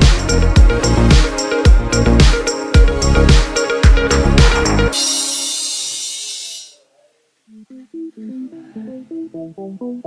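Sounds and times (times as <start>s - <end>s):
electronic music with drum beat: 0.0s - 6.8s.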